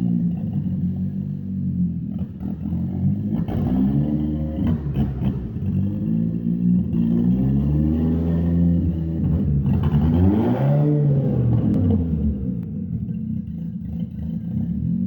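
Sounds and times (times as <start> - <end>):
pickup engine revving: 7.1 - 12.6.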